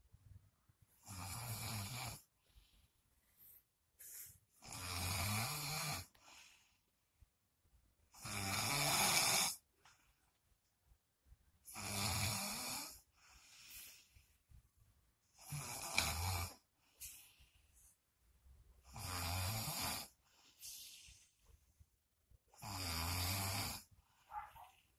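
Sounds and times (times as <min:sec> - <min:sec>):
person snoring: 0:01.0 - 0:02.2, 0:04.6 - 0:06.1, 0:08.2 - 0:09.6, 0:11.7 - 0:13.0, 0:15.4 - 0:16.6, 0:18.9 - 0:20.8, 0:22.6 - 0:23.9
quiet breaths out: 0:02.2 - 0:04.6, 0:06.0 - 0:07.1, 0:13.0 - 0:14.6, 0:16.6 - 0:18.1, 0:20.1 - 0:22.0.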